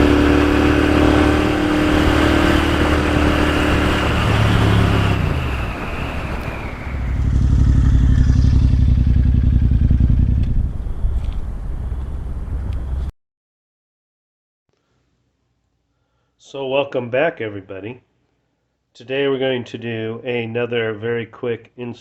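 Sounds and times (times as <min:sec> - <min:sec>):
motorcycle engine running: 0:00.0 - 0:06.1, 0:07.0 - 0:13.1.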